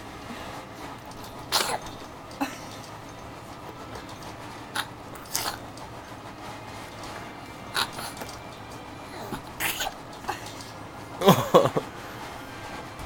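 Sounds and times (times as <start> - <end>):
pet sneezing: 1.3 - 2.9, 4.7 - 5.7, 7.7 - 8.3, 9.2 - 10.7.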